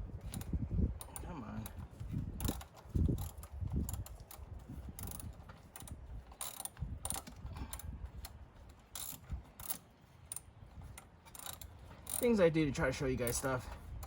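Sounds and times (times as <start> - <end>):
wrench clicking on bolt: 5.0 - 8.3, 8.9 - 12.4.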